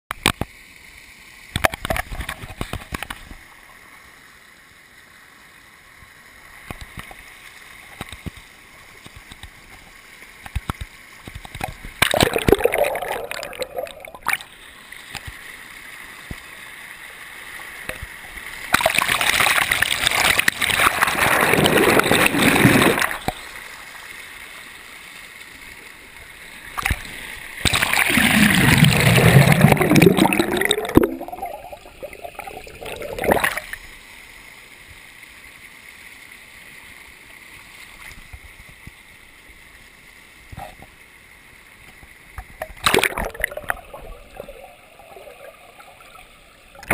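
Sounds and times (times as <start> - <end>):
steady water hiss: 0.2 - 46.9
water splashing and rushing: 1.5 - 3.7, 6.5 - 34.0, 42.3 - 46.9.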